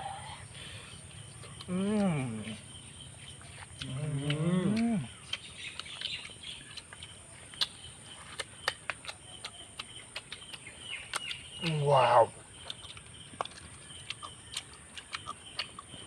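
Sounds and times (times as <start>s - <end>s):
eating clicks and smacks: 1.2s - 16.0s
man humming with enjoyment: 1.7s - 2.6s.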